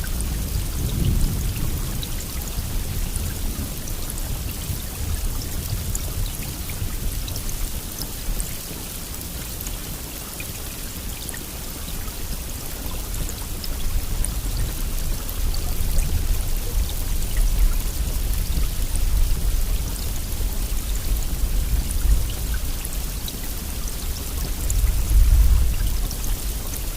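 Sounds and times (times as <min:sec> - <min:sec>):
heavy rain: 0:00.0 - 0:26.9.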